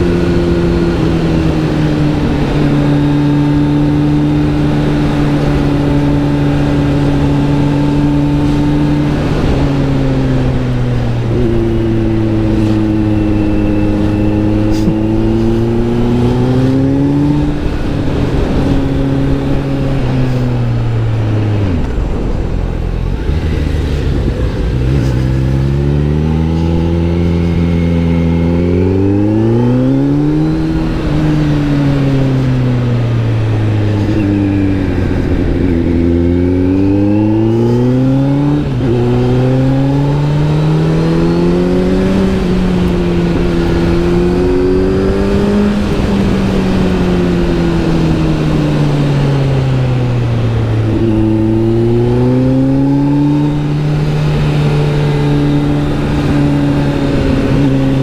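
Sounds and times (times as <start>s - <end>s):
motorcycle engine revving: 0.0s - 58.0s.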